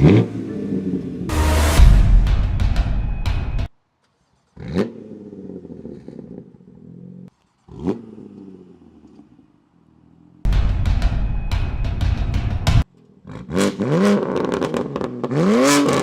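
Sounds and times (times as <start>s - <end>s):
car engine revving: 0.0s - 3.4s, 4.6s - 16.0s
loud music: 1.3s - 3.7s, 10.5s - 12.8s.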